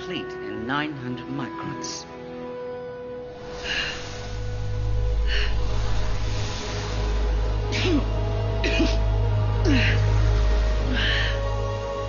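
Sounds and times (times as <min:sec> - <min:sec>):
low rumble: 0:03.2 - 0:12.0
steady hum: 0:03.2 - 0:12.0.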